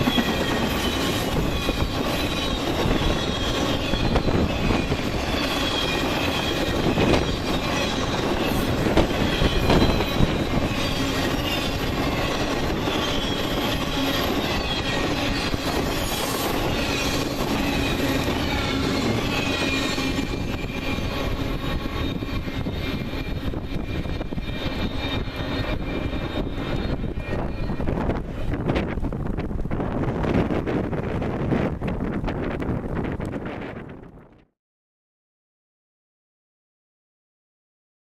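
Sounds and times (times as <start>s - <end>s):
high-pitched wheel squeal: 0.0s - 28.6s
train wheels rumbling on track: 0.0s - 34.2s.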